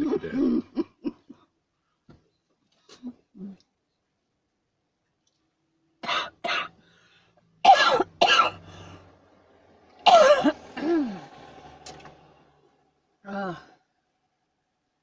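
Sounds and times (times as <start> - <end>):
person coughing: 6.0 - 6.7, 7.7 - 8.6, 10.1 - 11.2.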